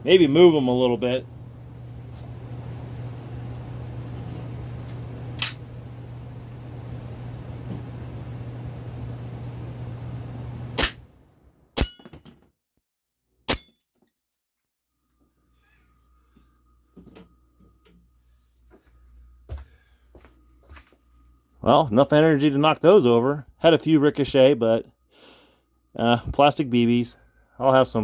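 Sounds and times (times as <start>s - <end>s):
steady low hum: 0.0s - 12.1s
airsoft pistol shots: 10.8s - 11.0s.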